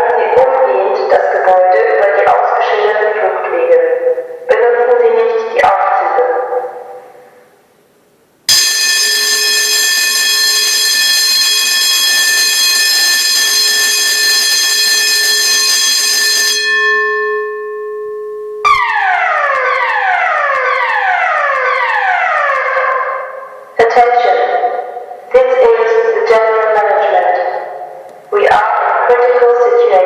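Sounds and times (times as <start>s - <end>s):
buzzing fire alarm tone: 8.5s - 23.8s.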